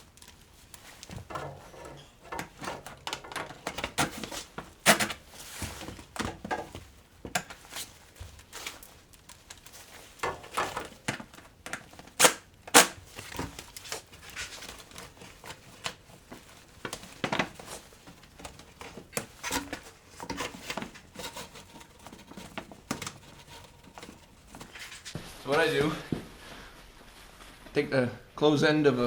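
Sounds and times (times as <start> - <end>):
tools clicking and clinking: 0.0 - 8.0, 8.6 - 14.0
loud sharp clicks: 12.2 - 13.0.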